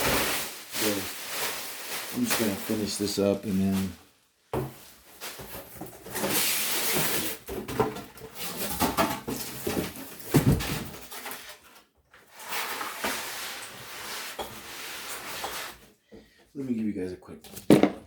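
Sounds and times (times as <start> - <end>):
packaging rustling: 0.0 - 3.9.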